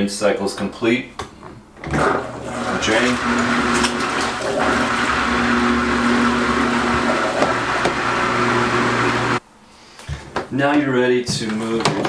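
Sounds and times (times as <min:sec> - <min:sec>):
water pouring out: 0:02.0 - 0:09.4.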